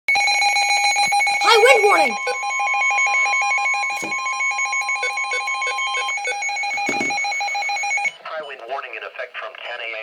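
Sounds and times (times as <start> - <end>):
steady warning alert tone: 1.1 - 8.2
pulsing two-pitch alert beep: 1.2 - 8.1.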